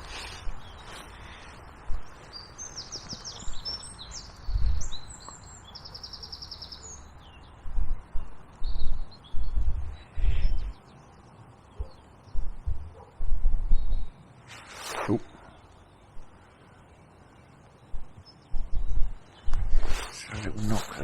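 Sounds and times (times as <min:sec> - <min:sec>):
songbird singing: 0:00.0 - 0:21.0
wind buffeting microphone: 0:01.6 - 0:05.7, 0:07.2 - 0:10.8, 0:11.8 - 0:14.2, 0:17.9 - 0:21.0.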